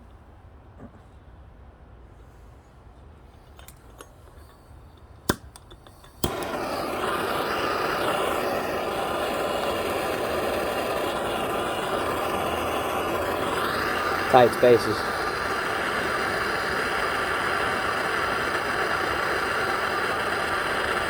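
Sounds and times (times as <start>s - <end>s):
soldering torch hissing: 5.3s - 21.0s.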